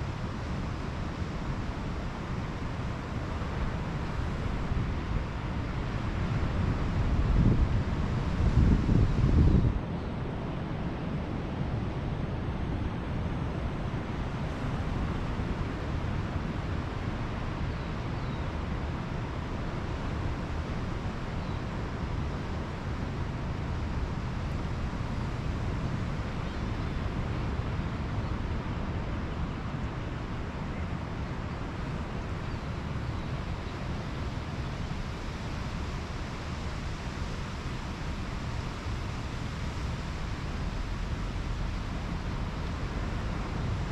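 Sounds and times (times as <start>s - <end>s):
ocean surf on beach: 27.1s - 43.9s.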